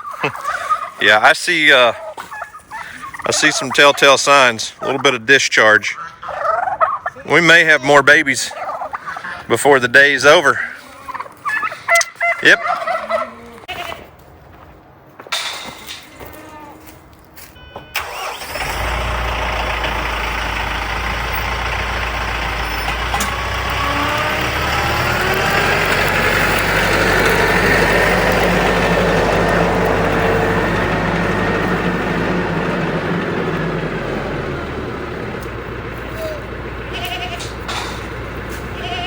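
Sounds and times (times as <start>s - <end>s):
vehicle engine starting and running: 17.8s - 39.0s.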